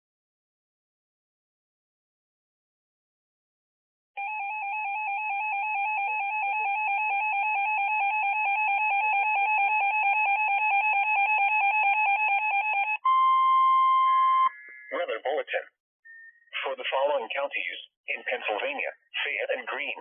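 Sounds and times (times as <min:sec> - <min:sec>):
two-tone alarm with fast flutter: 0:04.2 - 0:14.6
steady high single tone: 0:12.9 - 0:15.1.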